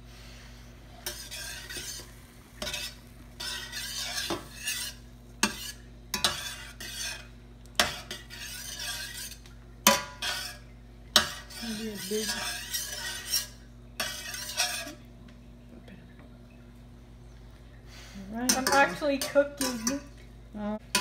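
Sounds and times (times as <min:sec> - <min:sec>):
frying sizzle: 0:00.0 - 0:17.0, 0:17.6 - 0:21.0
spoon scraping food in pot: 0:01.0 - 0:15.1, 0:18.5 - 0:20.2.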